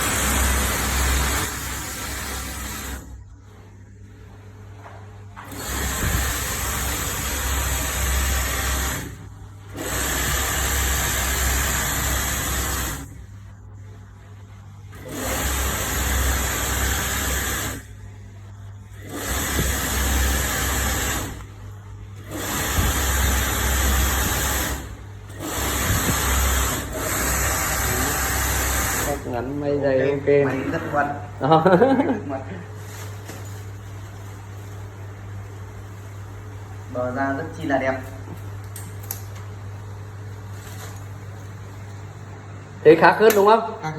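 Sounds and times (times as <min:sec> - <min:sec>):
sewing machine running: 0:00.0 - 0:03.2, 0:05.5 - 0:13.2, 0:14.9 - 0:17.9, 0:18.9 - 0:21.5, 0:22.2 - 0:29.4.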